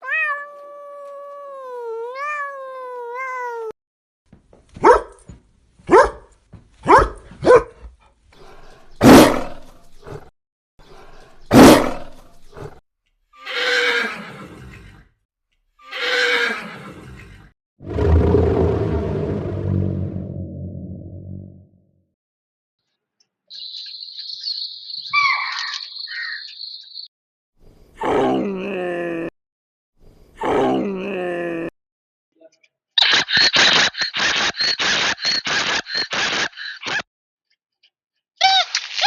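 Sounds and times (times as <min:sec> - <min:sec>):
loud animal calls: 0:13.4 - 0:14.8
rasping roars: 0:17.8 - 0:21.6.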